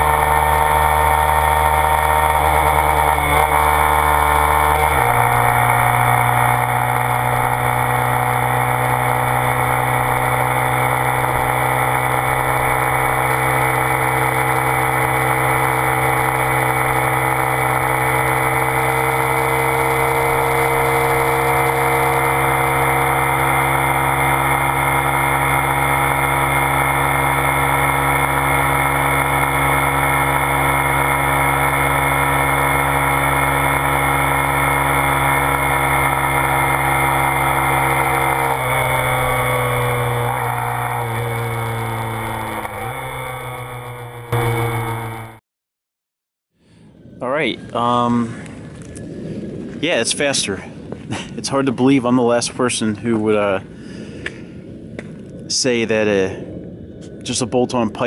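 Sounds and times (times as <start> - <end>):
motorcycle engine running: 0.0 - 45.4.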